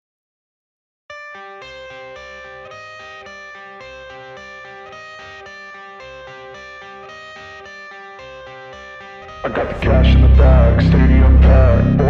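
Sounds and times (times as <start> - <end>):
instrumental guitar music with beat: 1.3 - 9.8.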